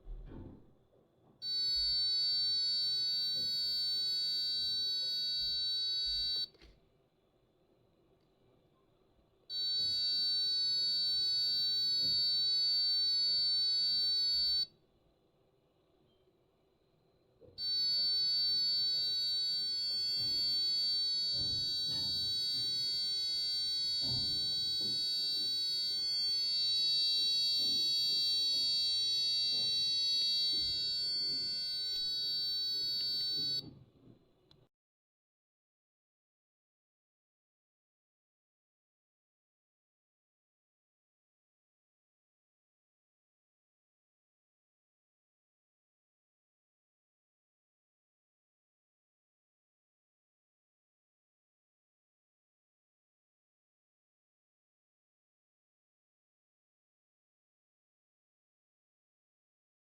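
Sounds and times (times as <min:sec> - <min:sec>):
electronic buzzer beeping: 0:01.4 - 0:06.6, 0:09.5 - 0:14.7, 0:17.6 - 0:33.7.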